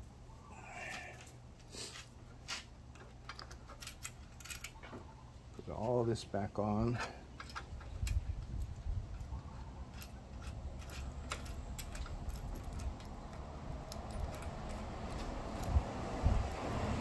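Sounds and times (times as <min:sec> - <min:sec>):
metallic clicks of small parts: 0:02.9 - 0:05.0, 0:07.0 - 0:15.8.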